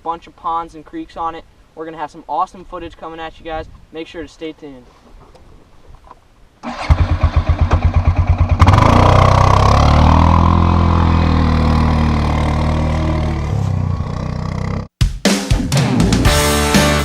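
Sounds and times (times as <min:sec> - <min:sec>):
engine starter cranking: 0:06.6 - 0:09.1
engine running fast: 0:06.7 - 0:14.9.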